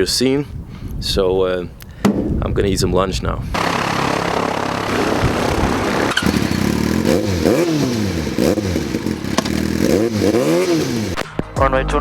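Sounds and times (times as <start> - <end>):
aircraft piston engine droning: 3.6 - 9.6.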